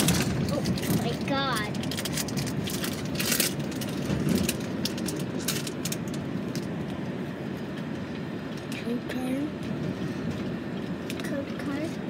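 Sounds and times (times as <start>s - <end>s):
foil wrapper crinkling and tearing: 1.6s - 6.7s.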